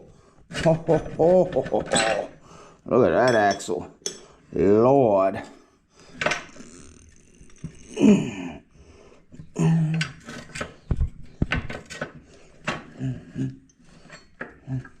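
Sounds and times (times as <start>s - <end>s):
metal parts clanking: 0.5s - 2.4s, 6.2s - 7.9s
person grunting: 7.8s - 8.7s, 9.6s - 10.1s, 12.9s - 13.6s.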